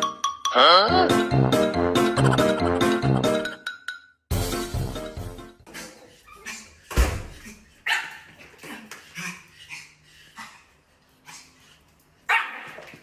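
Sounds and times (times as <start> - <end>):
dog barking: 7.8 - 8.2, 12.3 - 12.8.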